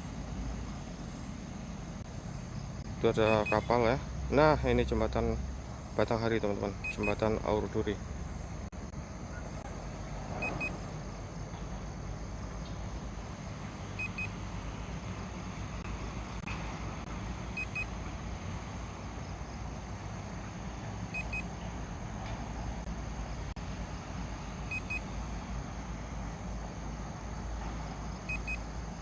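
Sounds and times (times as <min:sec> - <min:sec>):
low rumble and hiss: 0:00.0 - 0:29.0
remote controller double beep: 0:03.2 - 0:03.7, 0:06.8 - 0:07.2, 0:10.4 - 0:10.8, 0:14.0 - 0:14.3, 0:17.6 - 0:17.9, 0:21.1 - 0:21.5, 0:24.7 - 0:25.0, 0:28.3 - 0:28.6.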